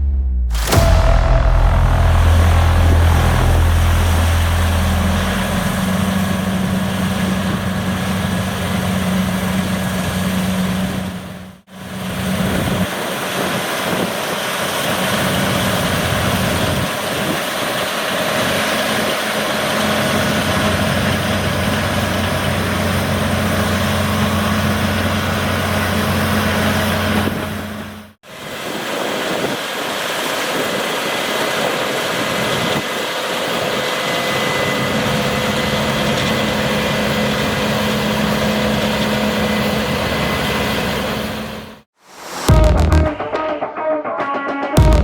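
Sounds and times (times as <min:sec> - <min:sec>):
machinery noise: 0:00.5 - 0:11.3
combine harvester engine drone: 0:00.6 - 0:12.8, 0:34.2 - 0:41.8.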